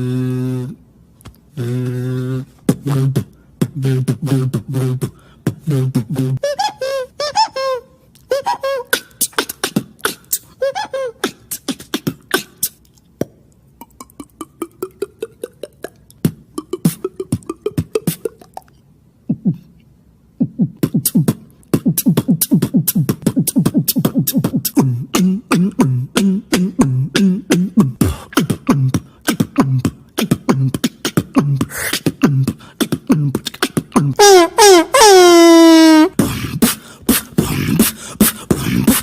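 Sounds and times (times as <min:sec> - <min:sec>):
beatboxing: 0:00.0 - 0:19.8, 0:20.4 - 0:39.0.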